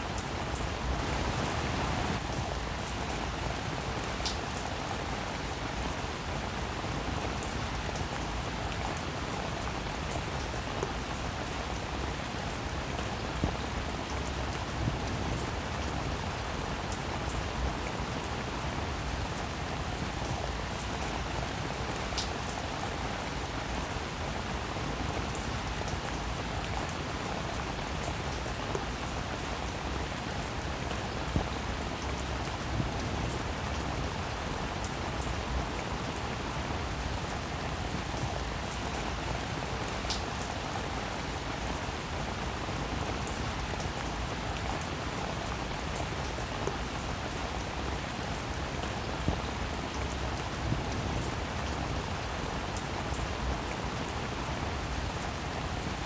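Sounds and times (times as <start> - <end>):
steady rain falling: 0.0 - 56.0.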